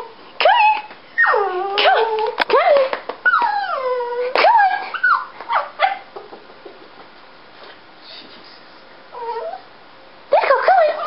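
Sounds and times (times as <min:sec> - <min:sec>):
dog whining: 0:00.0 - 0:06.2, 0:09.1 - 0:09.7, 0:10.3 - 0:11.0.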